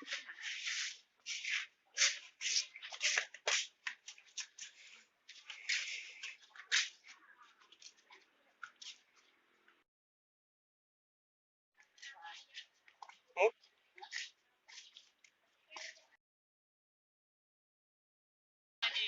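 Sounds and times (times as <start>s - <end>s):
short scrapes and swishes: 0.0s - 3.7s
rustling and brushing: 0.0s - 8.2s.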